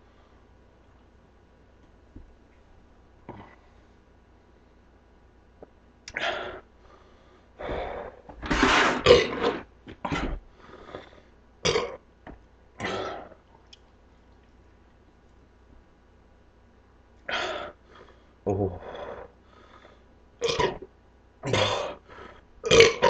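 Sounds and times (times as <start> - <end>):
man burping: 11.6 - 12.0, 20.4 - 20.8, 22.6 - 23.0.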